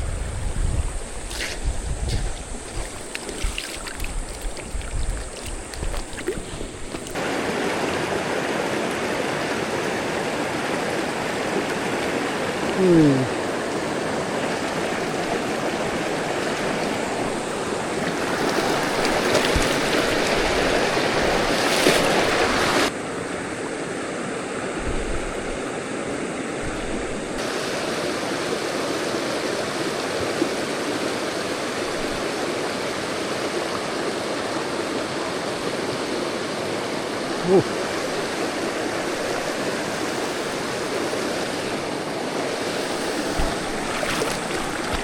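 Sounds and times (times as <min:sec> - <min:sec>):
water rushing over rocks: 0:02.4 - 0:45.0.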